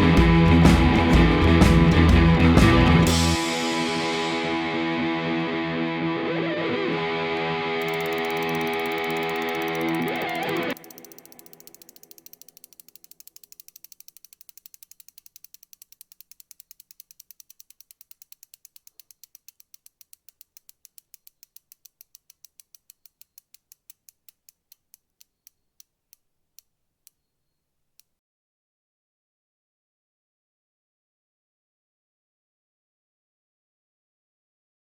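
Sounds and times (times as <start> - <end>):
bicycle freewheel clicking: 7.7 - 25.9.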